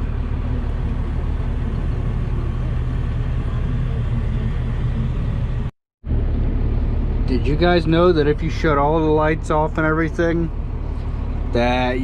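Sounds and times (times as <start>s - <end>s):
diesel engine rumbling: 0.0s - 12.0s.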